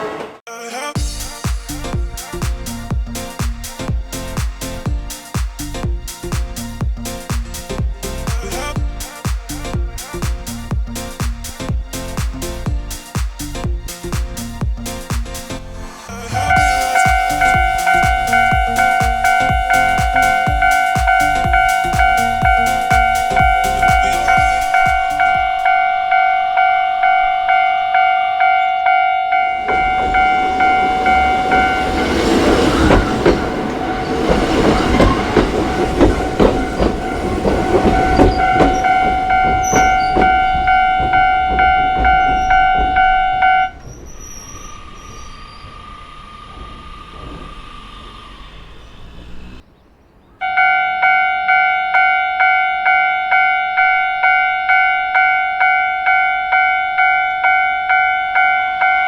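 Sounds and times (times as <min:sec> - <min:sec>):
level-crossing warning bell: 0:16.1 - 0:48.5, 0:50.4 - 0:59.0
train wheels clacking over rail joints: 0:16.5 - 0:25.7, 0:29.6 - 0:48.8.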